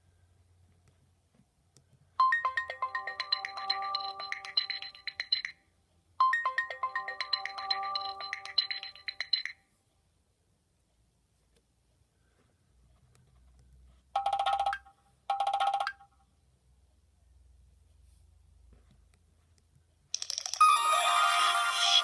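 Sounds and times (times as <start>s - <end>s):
phone ringtone melody: 2.2s - 5.6s, 6.2s - 9.6s, 20.2s - 22.0s.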